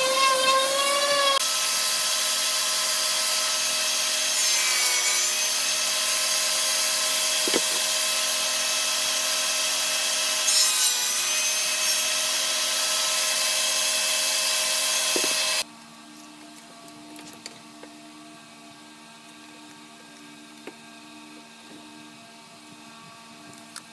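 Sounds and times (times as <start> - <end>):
power tool on wood: 0.0 - 15.7.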